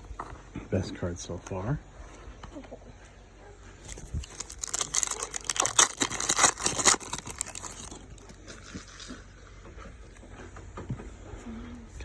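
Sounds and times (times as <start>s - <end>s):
wrapper crinkling and tearing: 3.8s - 9.2s.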